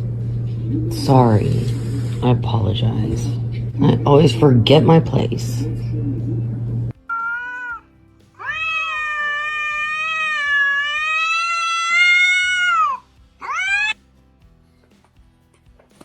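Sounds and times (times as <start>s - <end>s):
cat meowing: 7.0s - 14.0s.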